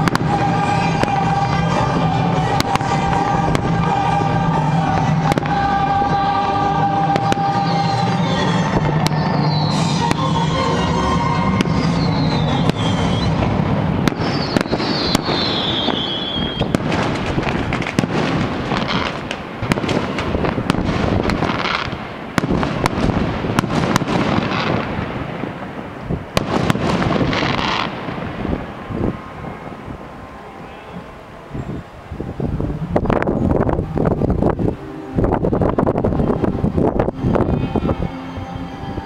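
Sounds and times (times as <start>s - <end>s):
music playing: 0.0s - 24.8s, 26.4s - 39.0s
fireworks bangs and crackling: 0.0s - 30.0s
firework whistles falling in pitch: 7.2s - 18.1s.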